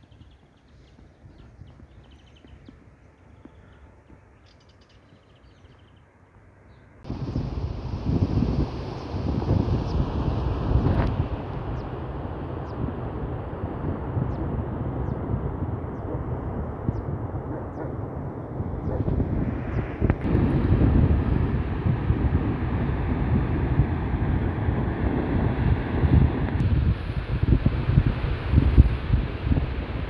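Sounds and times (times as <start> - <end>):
wind buffeting microphone: 7.0 - 30.0.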